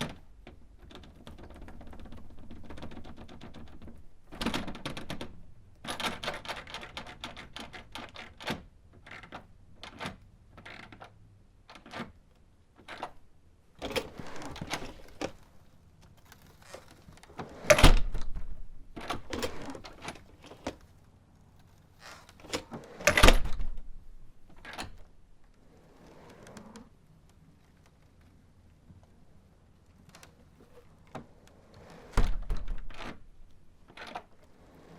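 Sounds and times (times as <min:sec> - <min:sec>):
door handle and latch clicking: 0:13.8 - 0:15.4, 0:17.4 - 0:20.7, 0:22.4 - 0:25.2, 0:31.8 - 0:34.3
door shutting thuds: 0:17.4 - 0:20.2, 0:22.5 - 0:25.1, 0:32.0 - 0:33.5.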